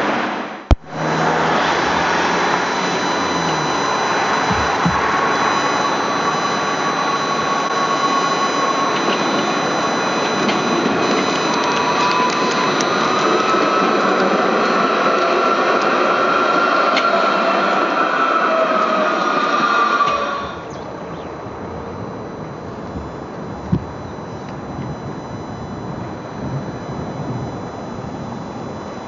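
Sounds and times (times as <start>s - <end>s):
tram running with high whine: 0.8s - 29.0s.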